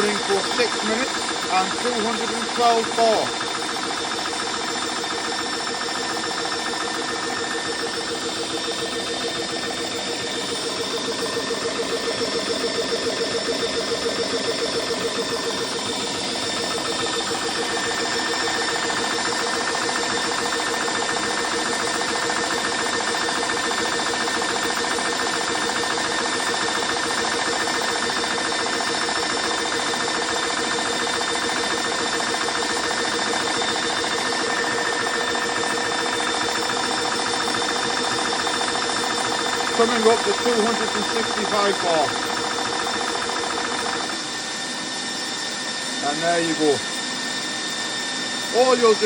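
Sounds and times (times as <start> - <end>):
air compressor pulsing: 0.0 - 49.0
cooling fans: 0.0 - 49.0.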